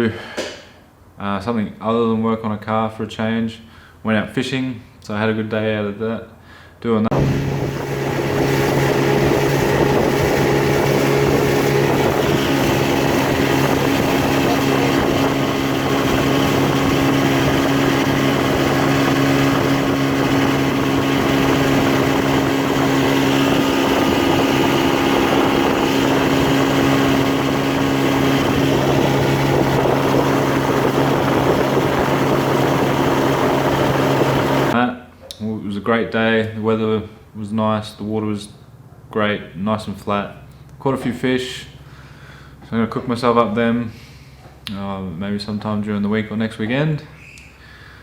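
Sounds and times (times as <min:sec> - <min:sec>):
boat motor humming: 0:07.1 - 0:34.8
water: 0:07.1 - 0:34.8
wind noise: 0:07.1 - 0:34.8.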